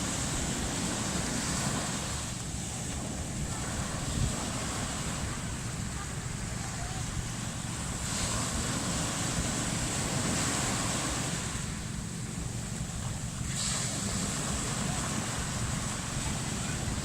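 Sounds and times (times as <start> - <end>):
ocean surf washing: 0.0 - 17.0
wind rumble on microphone: 0.0 - 17.0.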